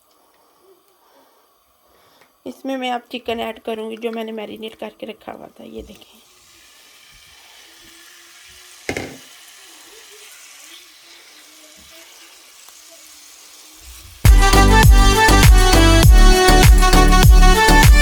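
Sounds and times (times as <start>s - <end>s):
chicken frying in hot oil: 6.1s - 14.3s
loud music: 14.3s - 18.0s.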